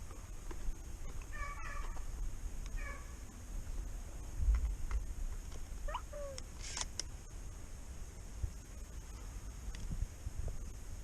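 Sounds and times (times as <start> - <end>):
camera handling noise: 6.4 - 7.1.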